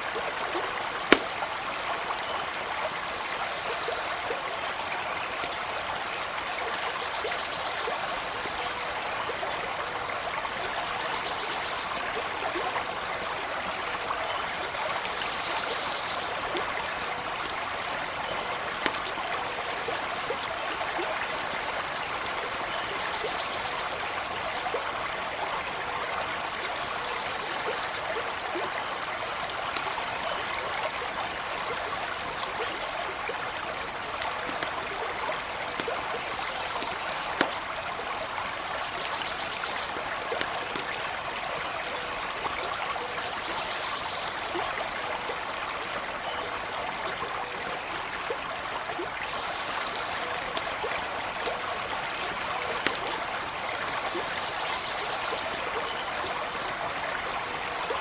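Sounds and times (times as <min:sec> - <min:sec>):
stream trickling: 0:00.0 - 0:58.0
faint sharp clicks: 0:01.0 - 0:02.1, 0:02.8 - 0:04.7, 0:06.7 - 0:13.4, 0:14.0 - 0:23.7, 0:30.8 - 0:41.6, 0:48.0 - 0:58.0.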